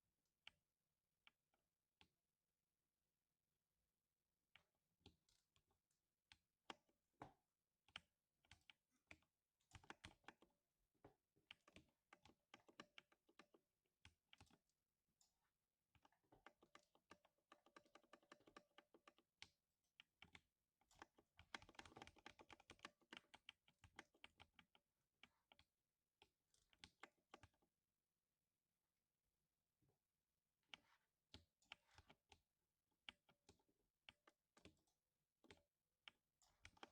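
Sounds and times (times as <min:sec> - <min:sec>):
mechanical keyboard typing: 0:21.0 - 0:24.6.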